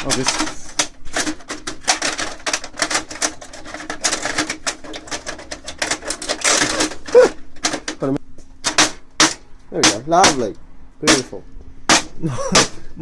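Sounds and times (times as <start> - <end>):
plastic clicks and knocks: 0.0 - 10.4.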